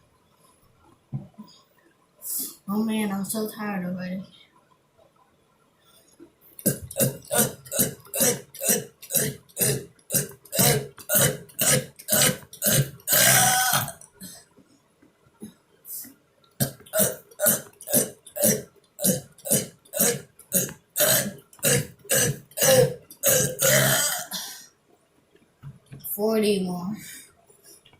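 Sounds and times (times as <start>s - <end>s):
person burping: 6.6s - 14.1s, 16.6s - 24.6s.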